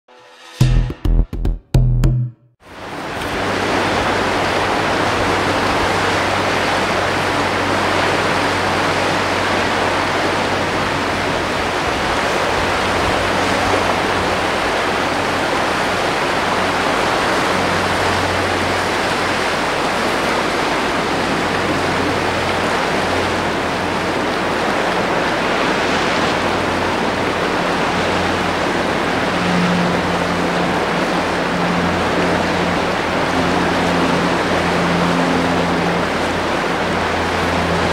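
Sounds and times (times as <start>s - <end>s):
sea wind: 2.6s - 37.9s
surf on rocks: 2.7s - 37.9s.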